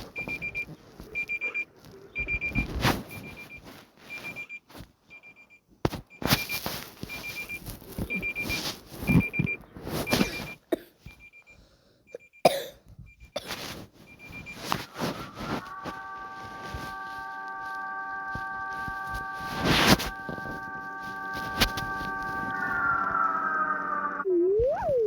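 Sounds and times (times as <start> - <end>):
high-pitched alarm beeps: 2.2 - 4.5, 6.3 - 12.5, 14.1 - 24.2
held tones: 14.0 - 24.2
loud bursts of noise: 14.4 - 24.2.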